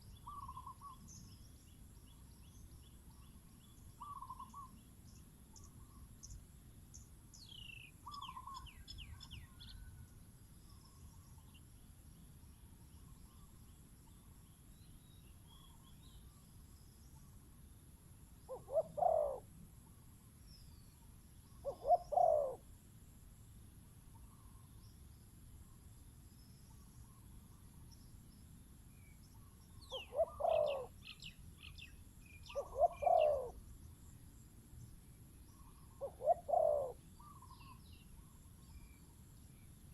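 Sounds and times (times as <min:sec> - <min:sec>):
small birds chirping: 0:00.0 - 0:09.9, 0:10.6 - 0:17.5, 0:18.4 - 0:22.6, 0:23.7 - 0:39.9
doves cooing: 0:18.5 - 0:19.5, 0:21.6 - 0:22.6, 0:29.9 - 0:31.0, 0:32.5 - 0:33.6, 0:35.7 - 0:37.6.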